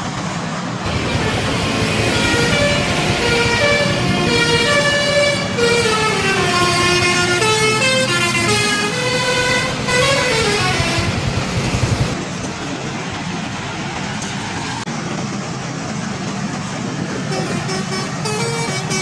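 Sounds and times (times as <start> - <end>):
vehicle noise: 0.0 - 19.0
bus musical horn playing tune: 0.9 - 11.3, 17.3 - 19.0.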